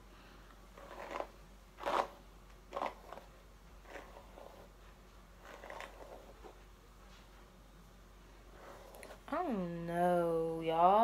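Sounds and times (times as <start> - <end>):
soft scraping rustles: 0.8 - 7.6, 8.2 - 9.3.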